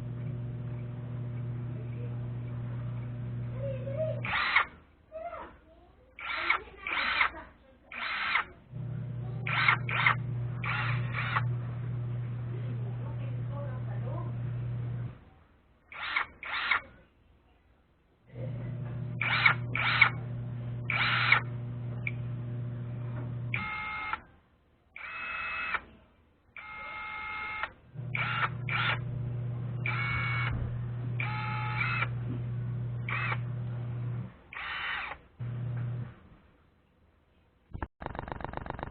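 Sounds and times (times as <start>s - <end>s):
impact wrench motor hum: 4.1s - 4.8s, 6.2s - 7.3s, 7.9s - 12.6s, 15.9s - 16.9s, 18.6s - 24.2s, 26.6s - 36.1s, 37.8s - 38.9s.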